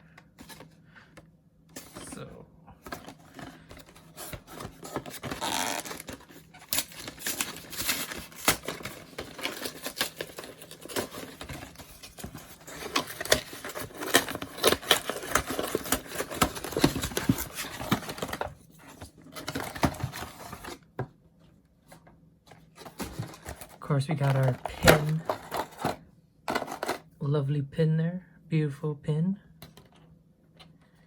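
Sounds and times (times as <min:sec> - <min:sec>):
packaging being torn and unwrapped: 0:04.1 - 0:18.4.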